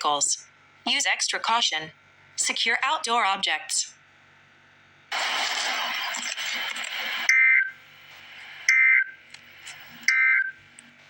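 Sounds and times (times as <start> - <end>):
loud hiss-like noise: 5.1 - 7.3.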